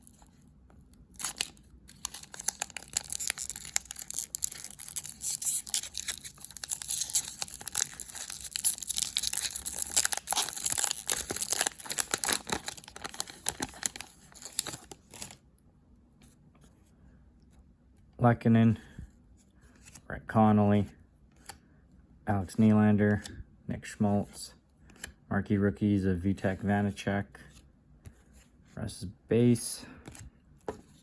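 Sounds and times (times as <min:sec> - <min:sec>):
wrappers torn and crinkled: 0:01.1 - 0:15.4.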